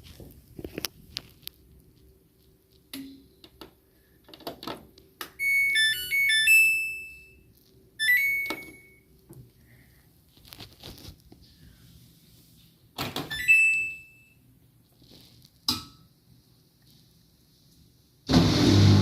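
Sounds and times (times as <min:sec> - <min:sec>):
washing machine beep melody: 0:05.4 - 0:09.1, 0:13.3 - 0:14.4.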